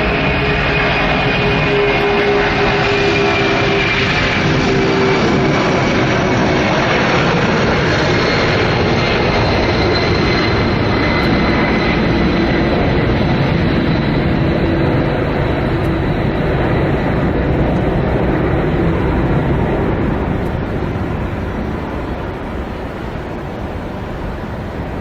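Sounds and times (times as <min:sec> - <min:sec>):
aircraft engines at high power: 0:00.0 - 0:25.0.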